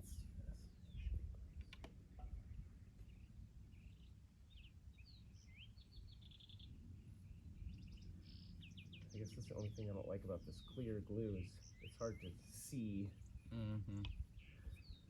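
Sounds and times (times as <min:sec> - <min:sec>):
faint birdsong chirps: 0:00.0 - 0:15.0.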